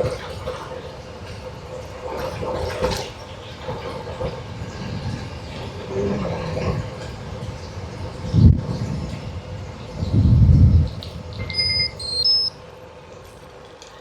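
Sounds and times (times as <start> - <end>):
wind on microphone: 3.6 - 12.2
faint steady hum: 9.6 - 13.5.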